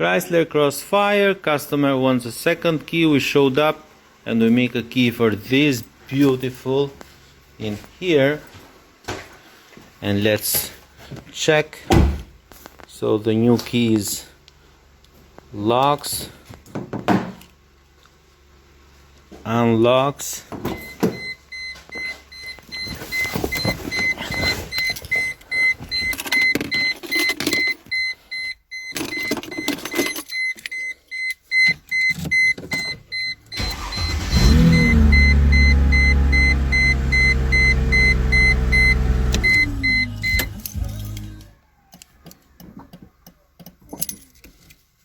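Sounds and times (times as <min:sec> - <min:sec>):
repeating warning beep: 0:20.8 - 0:40.7
car engine running: 0:33.6 - 0:41.5.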